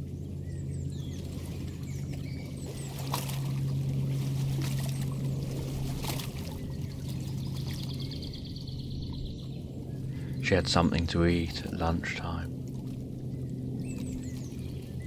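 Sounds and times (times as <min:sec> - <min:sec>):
steady low drone: 0:00.0 - 0:15.0
water pouring and splashing: 0:02.7 - 0:08.0.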